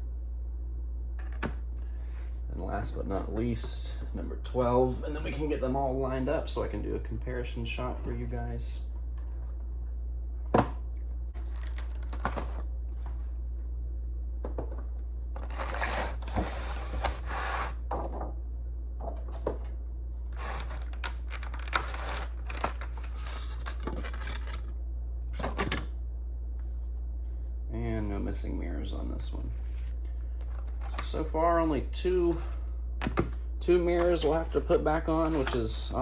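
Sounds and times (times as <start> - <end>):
steady low hum: 0.0 - 36.0
packaging rustling and crinkling: 11.4 - 12.6, 20.4 - 24.7.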